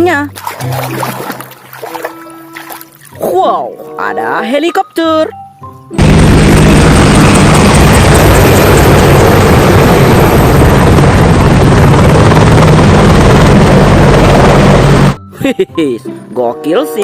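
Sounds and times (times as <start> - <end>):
helicopter rotor and engine: 6.0 - 15.2.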